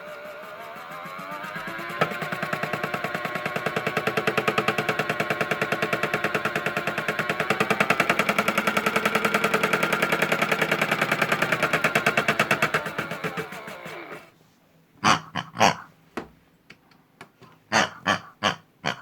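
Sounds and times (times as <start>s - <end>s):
toy washing machine rattling: 0.0s - 14.3s
motor whine: 0.0s - 14.4s.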